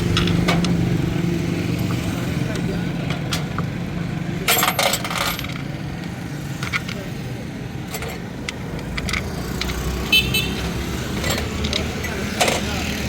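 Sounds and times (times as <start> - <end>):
metal tools clinking: 4.4 - 5.8.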